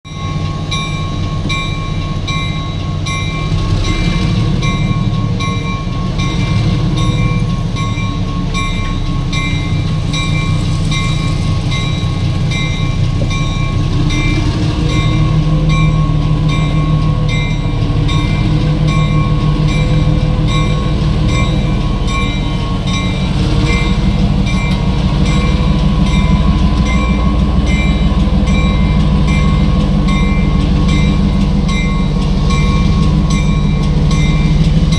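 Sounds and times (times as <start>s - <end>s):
diesel locomotive engine drone: 0.0s - 34.9s.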